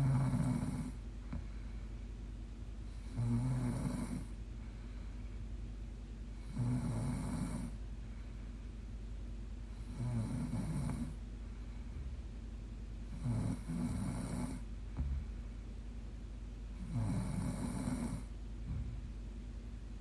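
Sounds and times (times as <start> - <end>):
woman snoring: 0.0 - 1.0, 3.0 - 4.3, 6.4 - 7.8, 9.8 - 11.2, 13.1 - 14.6, 16.8 - 18.3.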